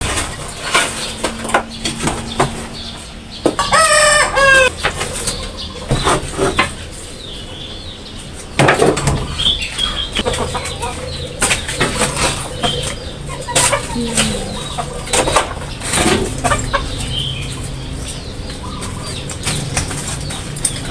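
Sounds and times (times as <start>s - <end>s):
chickens clucking: 0.0s - 20.9s
rooster crowing: 3.6s - 4.7s.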